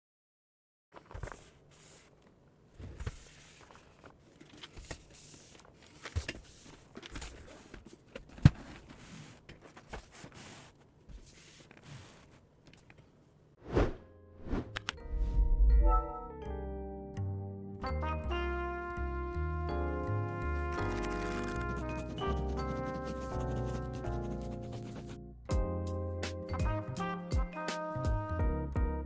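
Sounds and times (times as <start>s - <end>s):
rustling handling noises: 1.0s - 13.5s.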